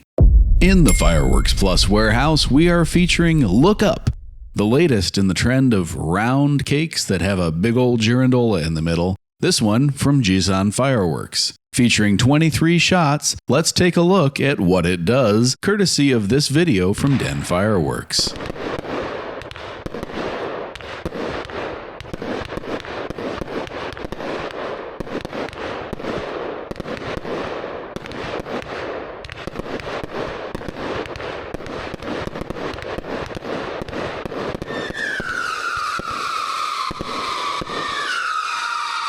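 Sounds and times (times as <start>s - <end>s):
fireworks shots with crackle: 0.0s - 5.1s, 18.4s - 39.0s
fireworks screaming whistles: 34.6s - 39.0s.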